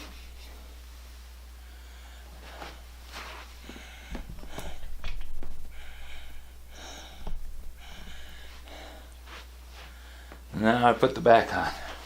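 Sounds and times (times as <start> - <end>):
man breathing heavily: 1.6 - 10.5.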